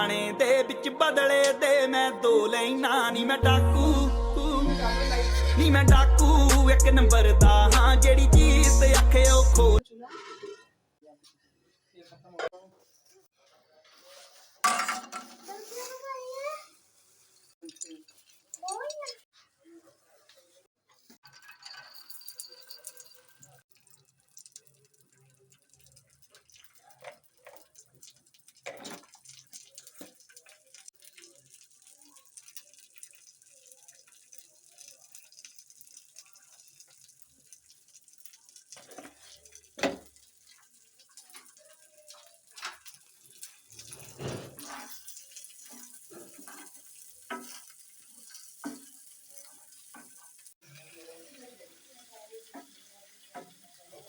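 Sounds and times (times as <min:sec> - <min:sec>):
kitchen knocks and clatters: 0:14.6 - 0:16.0, 0:20.9 - 0:24.0, 0:25.9 - 0:31.2, 0:38.7 - 0:41.6, 0:42.2 - 0:49.0.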